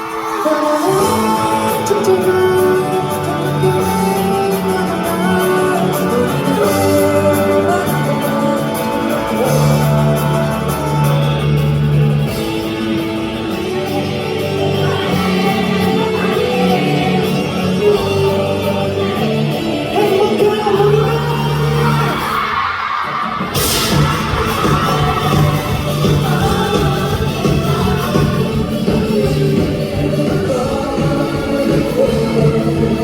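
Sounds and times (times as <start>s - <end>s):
rock band music with singing: 0.0s - 33.0s.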